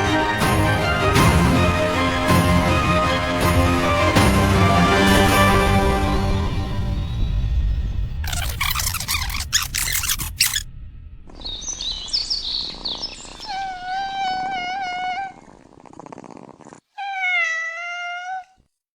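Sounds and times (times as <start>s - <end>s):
high squeaky chirps: 8.2s - 10.6s
cat meowing: 12.6s - 15.7s, 16.9s - 18.6s.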